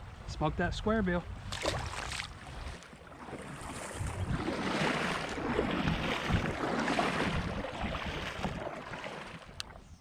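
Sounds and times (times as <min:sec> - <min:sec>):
water splashing around kayak: 0:01.3 - 0:10.0
wind buffeting microphone: 0:03.4 - 0:09.9.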